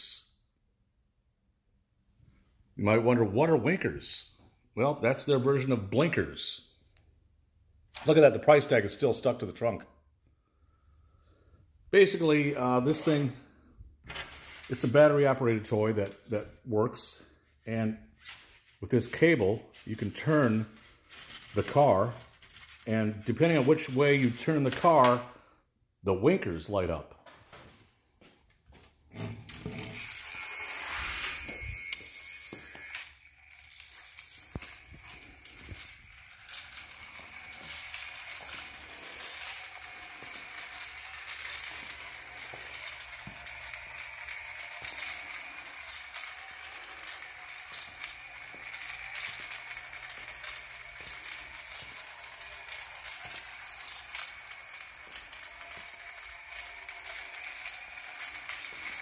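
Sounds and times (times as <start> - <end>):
toy car motor whirring: 18.2 - 25.1, 29.1 - 59.0.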